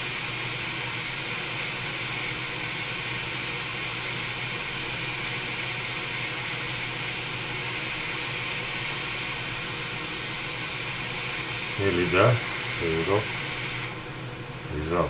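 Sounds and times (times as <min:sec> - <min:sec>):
hot air nozzle hissing: 0:06.3 - 0:14.0.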